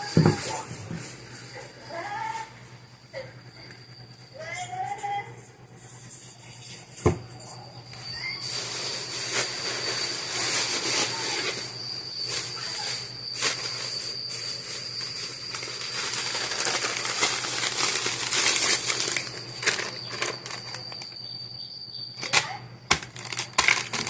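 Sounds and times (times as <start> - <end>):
high-pitched whine: 0.0 - 24.0
plastic bags crinkling: 8.4 - 21.2, 22.2 - 24.0.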